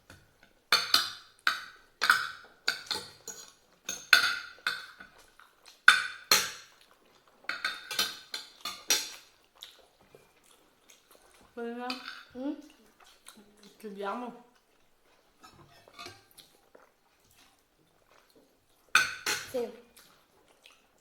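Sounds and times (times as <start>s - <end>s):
cutlery clinking on a ceramic plate: 0.1s - 5.2s, 5.9s - 6.8s, 7.5s - 9.3s, 11.9s - 12.4s, 15.4s - 16.3s, 19.0s - 19.5s.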